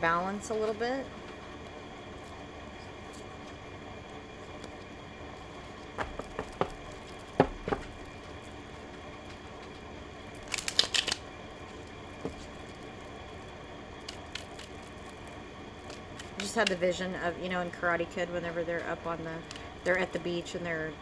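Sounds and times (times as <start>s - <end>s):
low room hum: 0.0s - 21.0s
cards tapping on table: 6.0s - 8.0s
cards fluttering: 10.3s - 16.8s, 19.4s - 20.0s.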